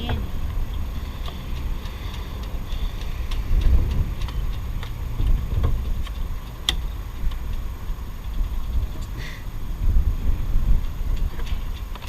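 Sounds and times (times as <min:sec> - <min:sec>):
faint ticks: 0:00.0 - 0:09.2
wind buffeting microphone: 0:00.0 - 0:12.0.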